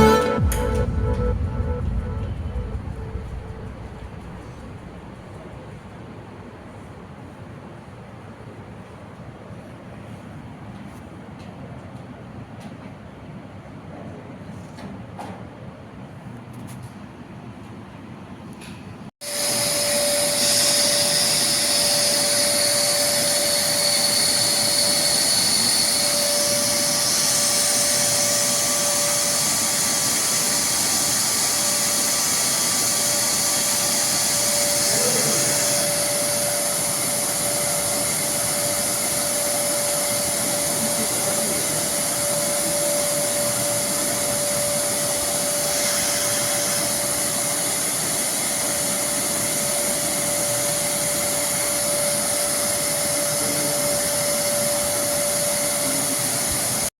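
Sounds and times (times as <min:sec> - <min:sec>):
vacuum cleaner motor running: 0:19.2 - 0:56.9.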